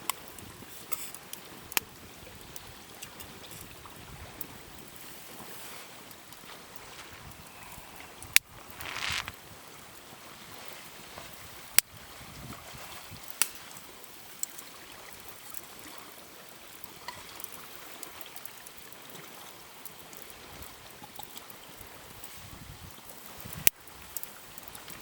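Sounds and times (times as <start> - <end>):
small ticks: 8.4 - 9.3.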